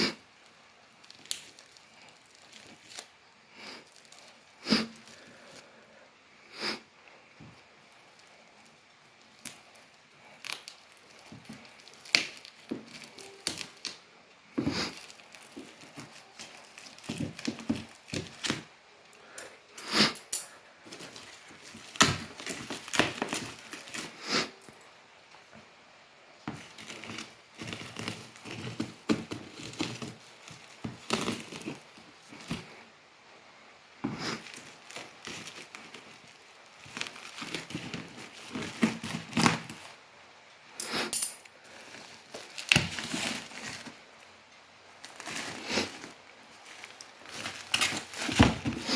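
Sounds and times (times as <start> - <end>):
packaging crinkling and tearing: 0.0 - 5.7, 7.9 - 18.7, 20.9 - 24.6, 26.5 - 32.8, 34.2 - 40.0, 41.7 - 44.3, 44.9 - 48.9.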